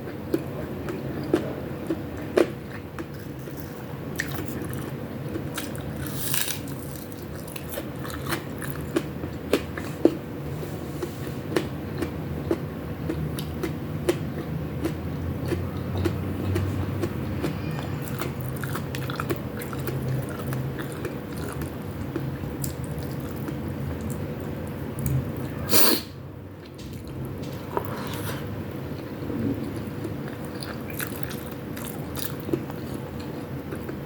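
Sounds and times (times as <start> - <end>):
person chewing and biting: 0.3 - 10.2, 11.0 - 25.2, 26.6 - 34.0.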